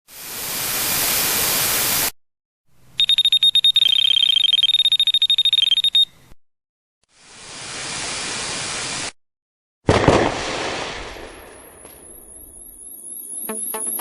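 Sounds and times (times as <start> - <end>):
bite alarm beeping: 3.0 - 6.2, 12.6 - 14.0.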